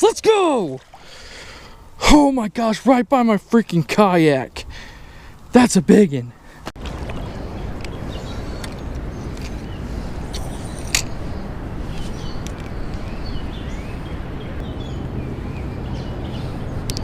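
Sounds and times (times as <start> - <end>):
small birds chirping: 6.2 - 17.0.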